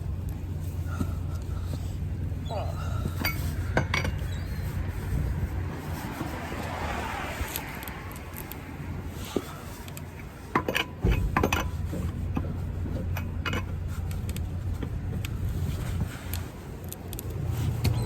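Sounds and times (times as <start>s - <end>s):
steady low hum: 0.0s - 6.5s
metal tools clicking and clinking: 3.1s - 4.3s.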